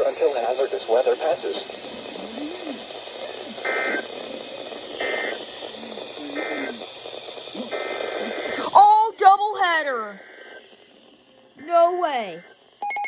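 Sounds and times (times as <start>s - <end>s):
radio hiss: 0.0s - 12.8s
warbling digital chirps: 12.1s - 13.0s.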